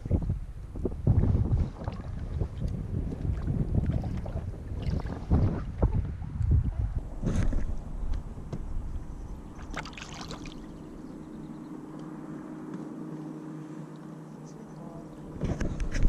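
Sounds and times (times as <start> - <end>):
wind buffeting microphone: 0.0 - 12.4, 14.6 - 16.0
faint steady hum: 6.3 - 16.0.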